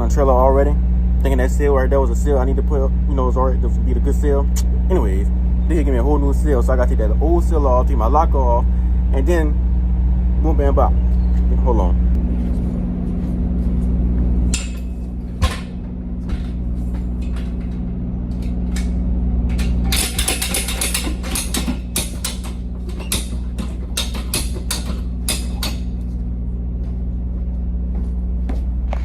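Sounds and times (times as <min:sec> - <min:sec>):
metallic clicking and knocking: 0:18.4 - 0:25.9.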